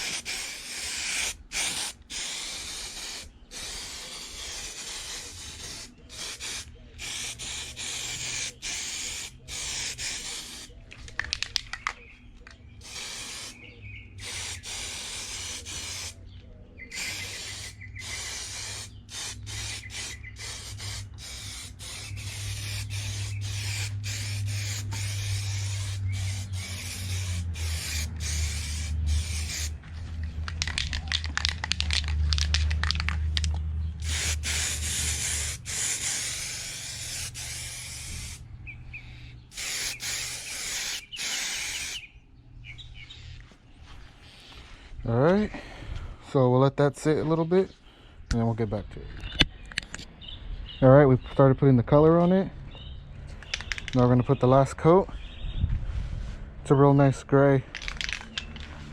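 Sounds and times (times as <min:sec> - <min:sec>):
spray paint hissing: 0:00.0 - 0:10.8, 0:12.8 - 0:16.2, 0:16.9 - 0:29.8, 0:30.4 - 0:38.4, 0:39.5 - 0:42.1, 0:57.8 - 0:58.9.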